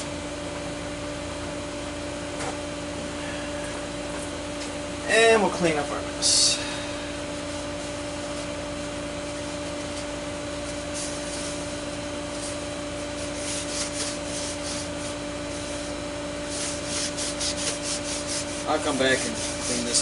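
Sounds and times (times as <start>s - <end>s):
steady hum: 0.0s - 20.0s
paper towel wiping: 10.6s - 20.0s.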